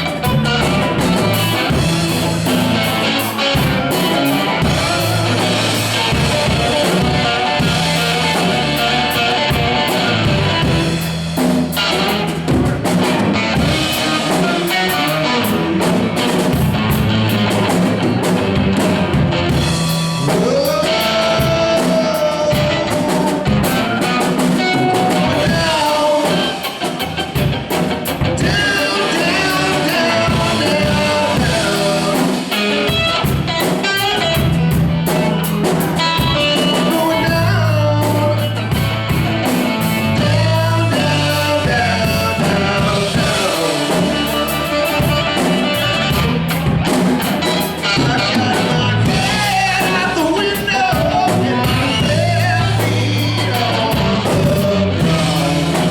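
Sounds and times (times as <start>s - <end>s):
blues-rock band playing: 0.0s - 55.9s
person singing: 19.8s - 27.3s, 28.4s - 55.9s.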